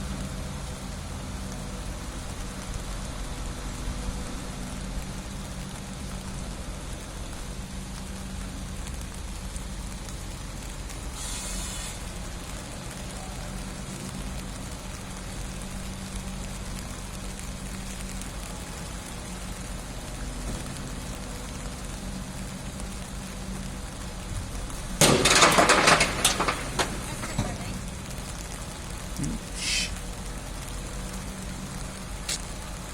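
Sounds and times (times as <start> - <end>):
engine idling: 0.6 - 32.9
hissing noise: 11.1 - 12.2, 29.0 - 30.2.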